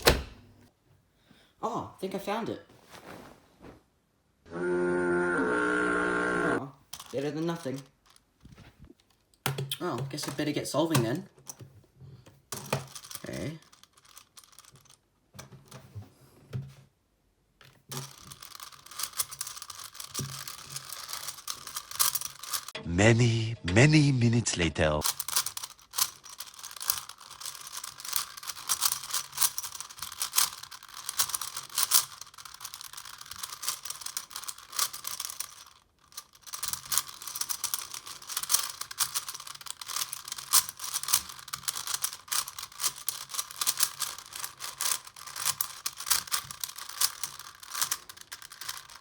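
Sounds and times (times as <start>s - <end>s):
puzzle cube clicking as turned: 25.1s - 49.0s.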